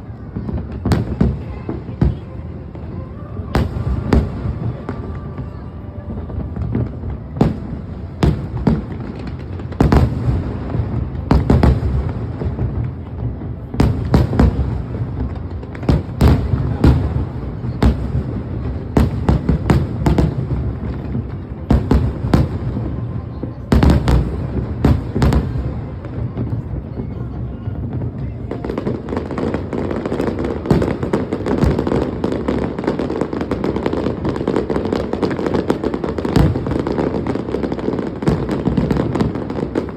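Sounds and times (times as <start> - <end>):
fireworks bursting with sharp bangs: 0.0 - 39.9.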